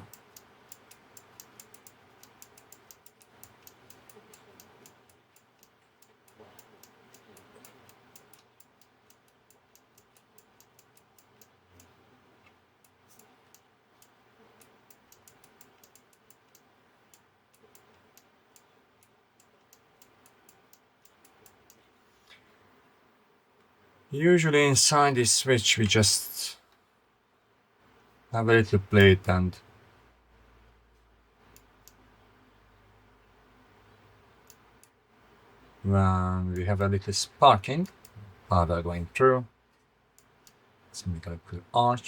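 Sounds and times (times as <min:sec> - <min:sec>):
small switch clicking rapidly: 0:00.0 - 0:21.8, 0:34.4 - 0:35.0, 0:40.2 - 0:40.7.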